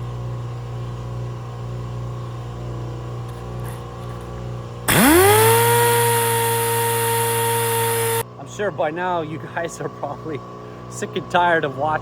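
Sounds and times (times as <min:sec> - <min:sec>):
low machine hum: 0:00.0 - 0:12.0
sander whining: 0:04.9 - 0:08.2.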